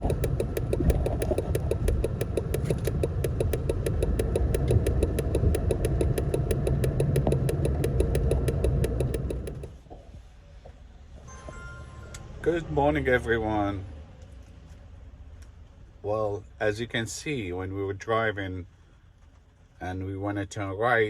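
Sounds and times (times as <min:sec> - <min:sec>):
turn signal ticking rapidly: 0:00.0 - 0:09.8
van engine running: 0:00.0 - 0:09.9.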